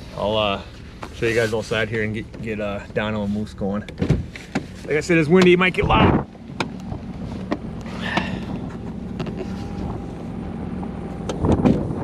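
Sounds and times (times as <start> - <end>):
engine running hum: 0.0 - 12.0.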